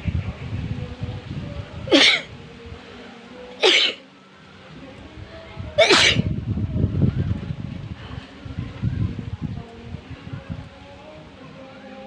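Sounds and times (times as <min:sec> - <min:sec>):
person sneezing: 0:01.9 - 0:02.3, 0:03.6 - 0:04.0, 0:05.8 - 0:06.3.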